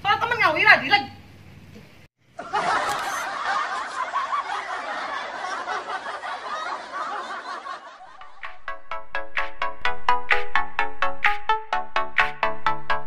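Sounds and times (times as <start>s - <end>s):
group of people laughing: 2.4s - 8.3s.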